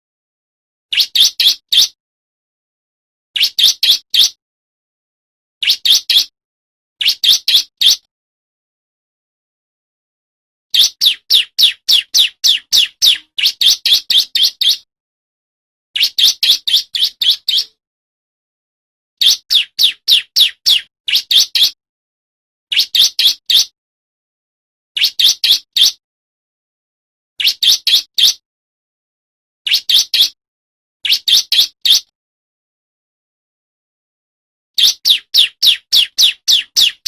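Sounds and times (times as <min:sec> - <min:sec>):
bird singing sharp high notes: 0:10.8 - 0:14.9, 0:34.8 - 0:37.0.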